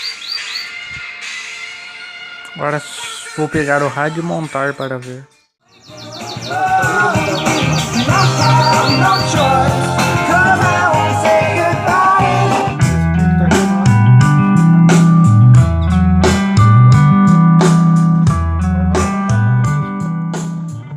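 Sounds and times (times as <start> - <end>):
person singing: 0.7 - 4.4, 5.9 - 14.2
bass line: 6.0 - 20.9
strummed guitar chords: 6.1 - 20.9.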